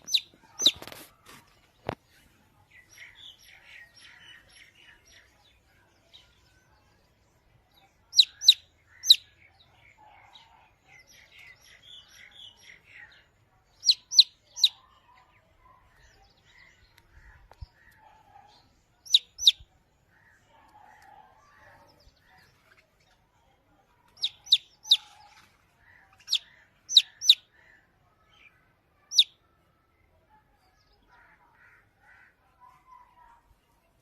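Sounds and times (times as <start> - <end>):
loud high chick peeps: 0.0 - 1.1, 8.1 - 9.2, 13.8 - 14.8, 19.0 - 19.6, 24.2 - 25.2, 26.2 - 27.5, 29.1 - 29.4
soft chick cheeping: 0.0 - 1.1, 8.1 - 9.3, 13.8 - 15.0, 17.0 - 19.7, 24.1 - 25.3, 26.2 - 27.5, 29.1 - 29.4.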